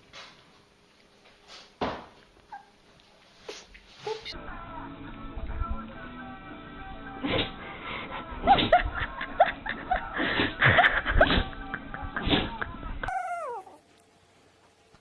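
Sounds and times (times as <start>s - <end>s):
dog whining: 2.5s - 2.8s, 13.1s - 13.8s.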